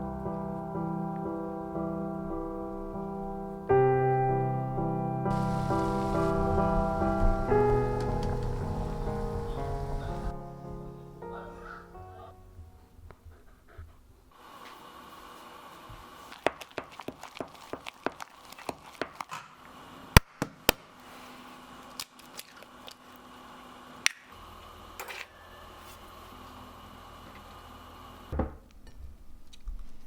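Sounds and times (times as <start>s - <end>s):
faint steady hum: 5.3s - 10.4s.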